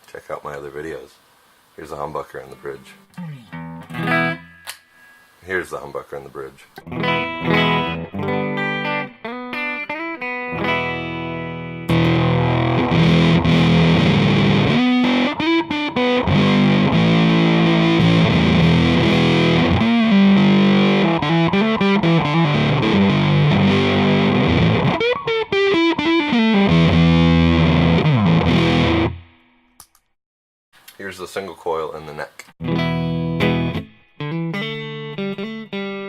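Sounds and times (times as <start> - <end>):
fuzzed electric guitar: 6.8 - 29.3, 32.6 - 36.0.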